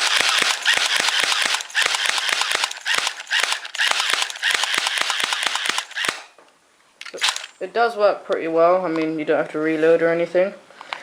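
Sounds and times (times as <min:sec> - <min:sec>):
motor and gearbox whir: 0:00.0 - 0:06.3, 0:07.1 - 0:07.5
airsoft pistol clacking: 0:00.0 - 0:06.4.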